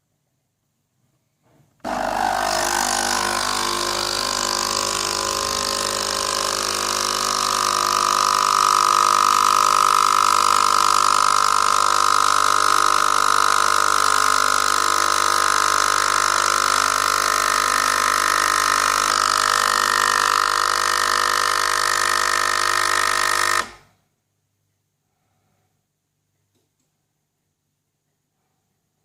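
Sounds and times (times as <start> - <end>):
coffee machine pump humming: 1.8 - 23.8.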